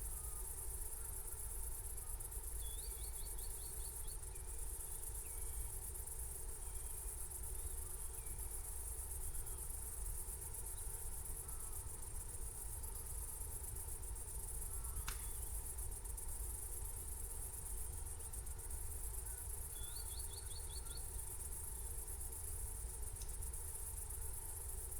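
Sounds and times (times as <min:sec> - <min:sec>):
crickets trilling: 0:00.0 - 0:24.9
sharp click: 0:15.0 - 0:15.4.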